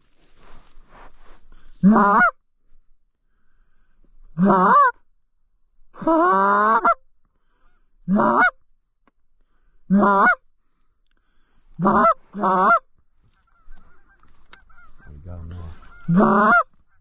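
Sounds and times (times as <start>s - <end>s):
goose honking: 1.8s - 2.3s, 4.4s - 4.9s, 6.0s - 7.0s, 8.1s - 8.6s, 9.9s - 10.4s, 11.8s - 17.0s.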